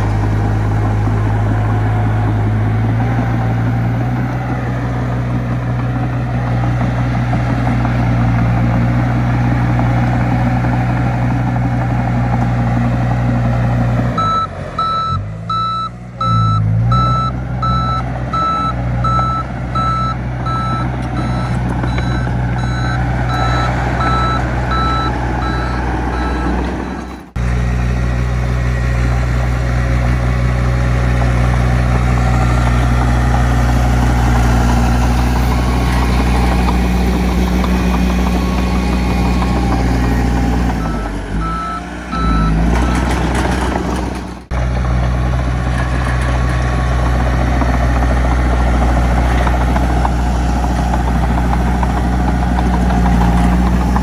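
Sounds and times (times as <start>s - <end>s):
diesel machinery running: 0.0s - 54.0s
reverse alarm beeping: 14.2s - 27.2s, 40.8s - 43.2s.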